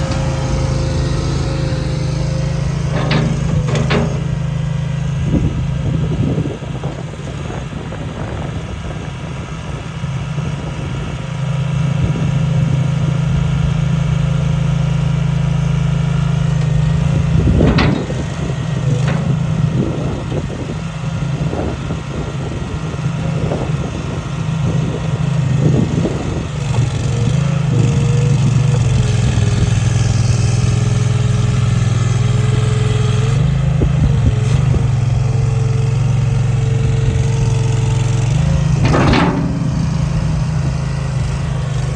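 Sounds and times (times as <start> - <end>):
skid loader engine running: 0.0 - 41.9
sharp knocks: 2.8 - 4.4, 17.5 - 19.8, 38.7 - 41.2
steady whine: 38.7 - 41.5.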